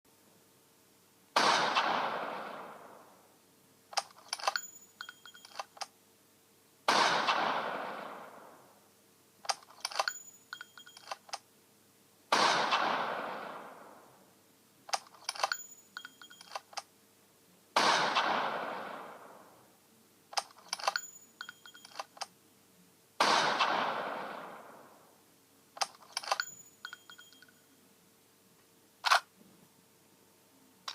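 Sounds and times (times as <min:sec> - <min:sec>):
rifle shots: 0:01.4 - 0:03.2, 0:06.9 - 0:08.7, 0:12.3 - 0:14.2, 0:17.8 - 0:19.6, 0:23.2 - 0:25.1
metallic clicks and clinks: 0:03.9 - 0:05.9, 0:09.4 - 0:11.4, 0:14.9 - 0:16.9, 0:20.3 - 0:22.3, 0:25.8 - 0:27.6.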